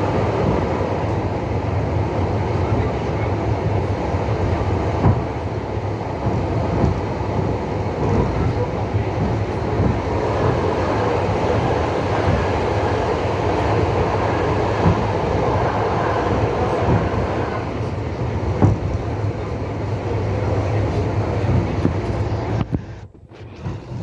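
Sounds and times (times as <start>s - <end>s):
train rumbling along track: 0.0s - 24.0s
wheels knocking on rails: 6.1s - 19.5s.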